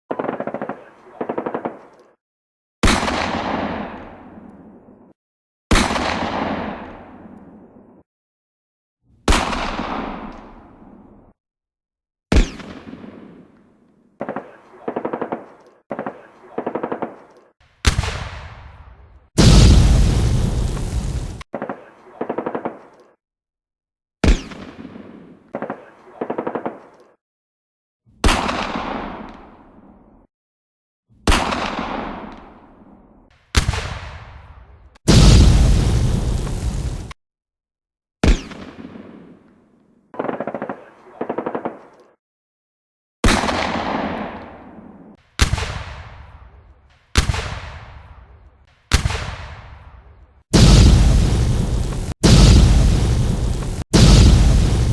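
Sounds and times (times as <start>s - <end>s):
heavy gunshots with echo: 19.4s - 21.4s, 35.1s - 37.2s, 50.5s - 54.9s
loud sustained blast: 19.4s - 21.4s, 35.1s - 37.1s, 50.6s - 54.9s.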